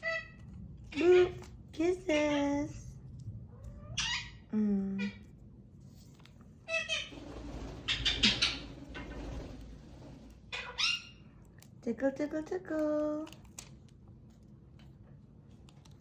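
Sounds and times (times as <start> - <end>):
parrot chirping: 3.8 - 5.2, 7.8 - 9.1, 10.5 - 11.3.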